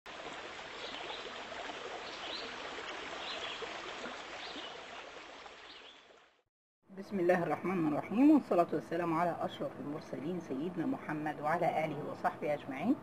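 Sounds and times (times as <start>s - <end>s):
running water: 0.1s - 6.4s.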